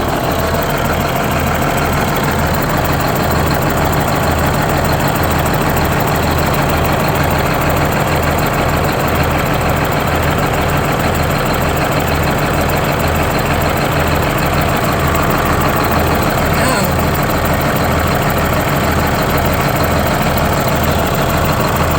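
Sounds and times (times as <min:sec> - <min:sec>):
diesel bus engine idling: 0:00.0 - 0:21.9.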